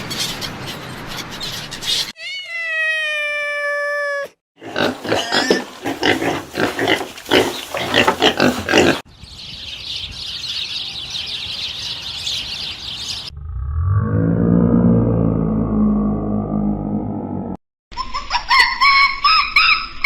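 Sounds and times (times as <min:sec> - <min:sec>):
pigs grunting: 0:04.6 - 0:09.0.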